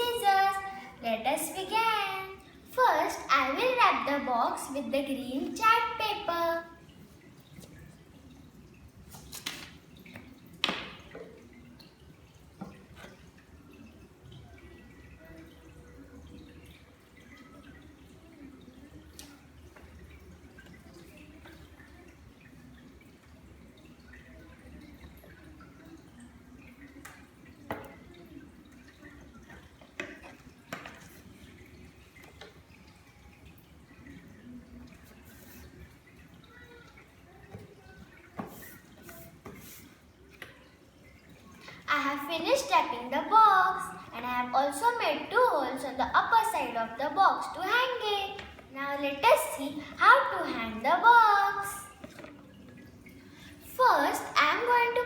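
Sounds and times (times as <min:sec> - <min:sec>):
faint room hum: 0:00.0 - 0:55.0
paper rustling and crinkling: 0:09.1 - 0:09.8
paper snap: 0:09.1 - 0:09.8
paper crackling and tapping: 0:09.1 - 0:11.0.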